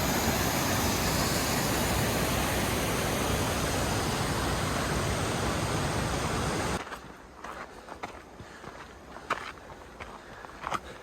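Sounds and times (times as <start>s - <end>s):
creek water rushing: 0.0s - 6.8s.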